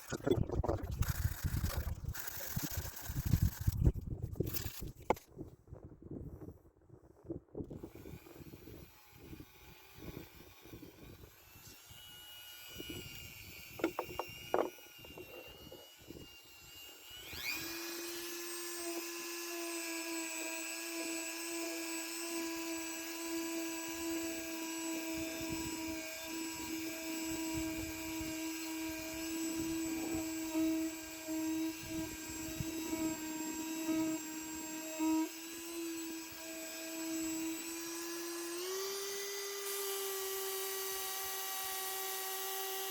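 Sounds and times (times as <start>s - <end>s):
knocks and scrapes of handling: 0.2s - 5.5s, 13.8s - 15.4s
electric power tool whining: 0.9s - 5.2s, 7.7s - 42.9s.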